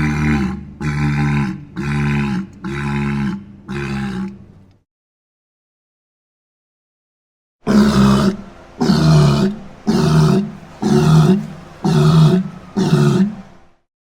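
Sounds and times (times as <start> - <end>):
grunting creature roars: 0.0 - 4.4, 7.7 - 13.4.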